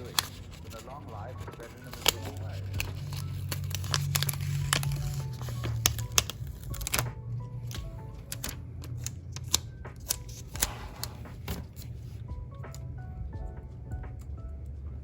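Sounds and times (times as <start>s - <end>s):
stickers peeled and pressed: 0.0s - 12.2s
paper handling crackles: 0.0s - 12.3s
soft background music: 0.0s - 15.0s.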